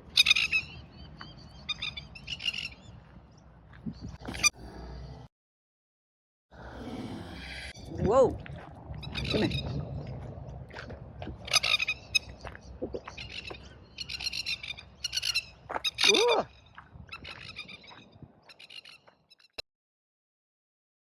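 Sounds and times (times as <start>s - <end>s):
birds chattering calls: 0.0s - 5.3s, 9.0s - 19.6s.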